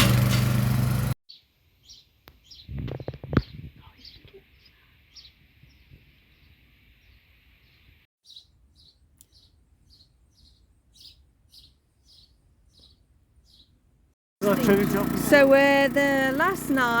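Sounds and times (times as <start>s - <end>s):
faint birdsong: 1.3s - 13.9s
bird short high chirp: 8.2s - 13.7s.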